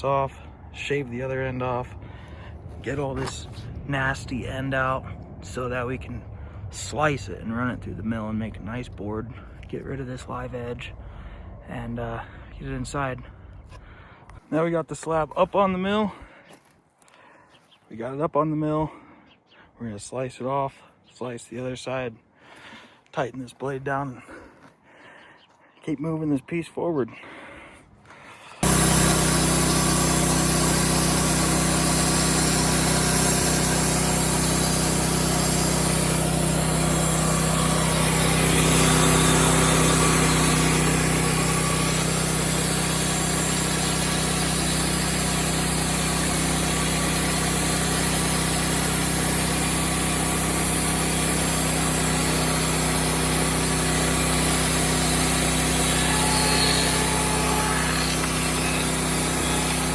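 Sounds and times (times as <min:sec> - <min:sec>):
band sawmill engine hum: 0:00.0 - 0:14.0, 0:28.5 - 0:59.9
saw blade cutting wood: 0:28.5 - 0:59.9.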